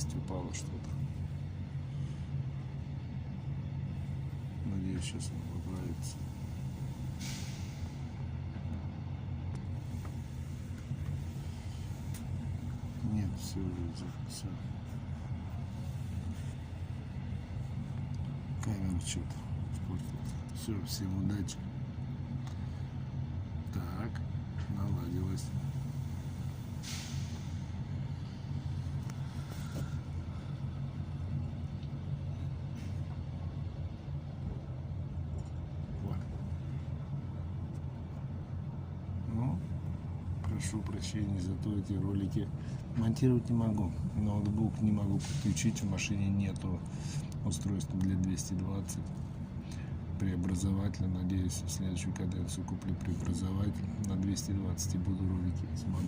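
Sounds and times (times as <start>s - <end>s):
train rumbling: 0.0s - 56.0s
short hiss: 6.2s - 8.0s, 25.8s - 27.7s, 45.2s - 45.7s.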